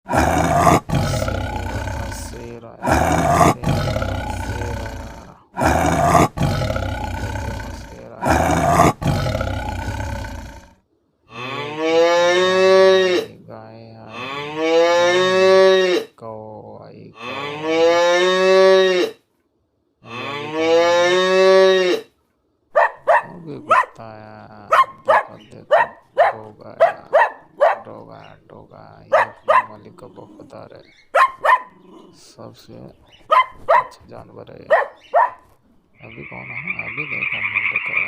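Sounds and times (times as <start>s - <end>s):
cow mooing: 0.1s - 10.7s, 11.3s - 13.4s, 14.1s - 16.1s, 17.2s - 19.2s, 20.0s - 22.1s
lion roaring: 0.1s - 13.3s, 23.1s - 24.0s, 24.7s - 30.8s, 31.4s - 32.4s.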